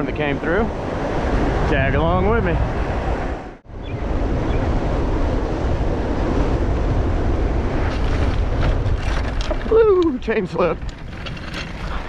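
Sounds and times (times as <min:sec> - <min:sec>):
wind rushing over microphone: 0:00.0 - 0:12.0
bike rumbling along trail: 0:04.9 - 0:12.0.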